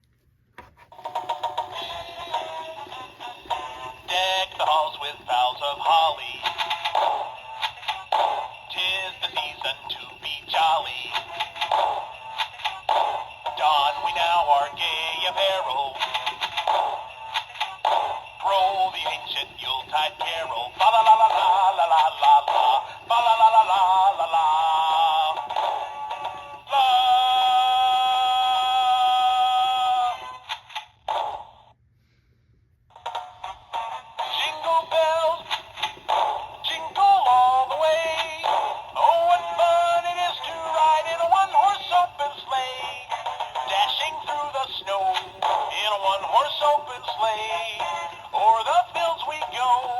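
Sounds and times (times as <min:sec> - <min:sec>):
toy singing through small speaker: 0:01.2 - 0:30.5, 0:33.8 - 0:35.7, 0:36.6 - 0:49.9
synthetic sung voice: 0:18.4 - 0:25.5.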